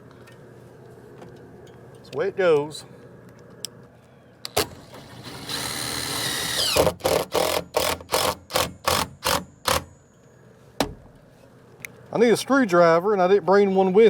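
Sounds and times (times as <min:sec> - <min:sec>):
cordless drill whirring: 0:04.5 - 0:09.8.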